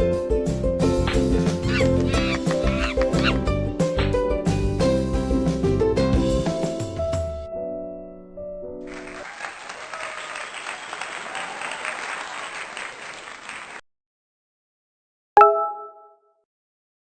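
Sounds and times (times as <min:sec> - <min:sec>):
crowd applause: 0:08.9 - 0:13.8.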